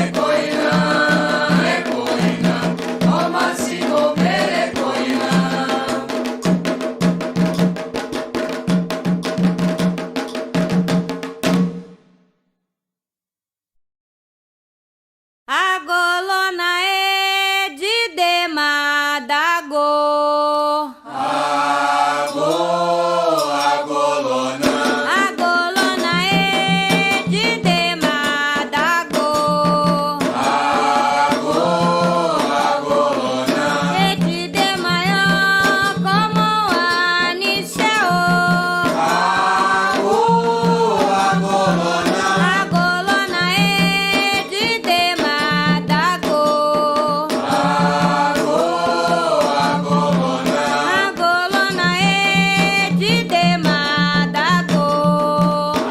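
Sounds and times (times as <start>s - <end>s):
call-and-response singing: 0.0s - 6.3s, 15.5s - 55.9s
drums and percussion: 0.0s - 12.3s, 21.2s - 55.9s
person singing alone: 24.6s - 55.9s.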